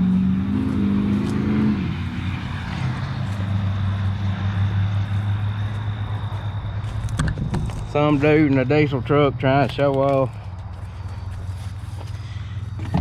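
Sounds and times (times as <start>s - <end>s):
diesel engine running hard: 0.0s - 6.9s.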